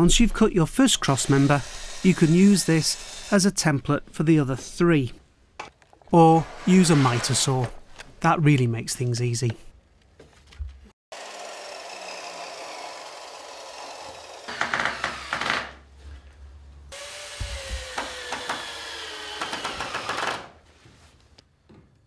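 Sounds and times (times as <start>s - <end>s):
miter saw cutting wood: 1.0s - 3.4s, 11.1s - 15.4s, 17.0s - 20.5s.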